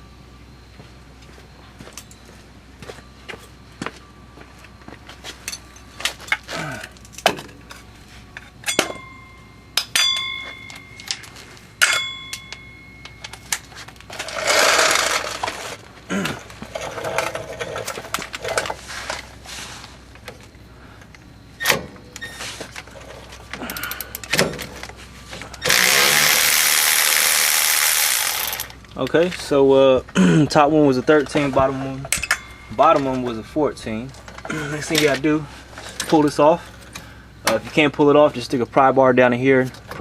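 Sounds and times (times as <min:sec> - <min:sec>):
hand tools clanking on metal: 0:05.4 - 0:19.2, 0:21.0 - 0:29.6, 0:30.5 - 0:37.6.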